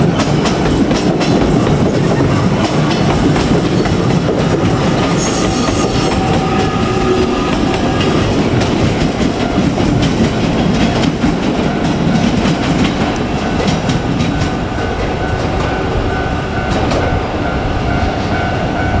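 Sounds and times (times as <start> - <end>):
wheels clicking over rail joints: 0.0 - 15.2
train rumbling past: 0.0 - 19.0.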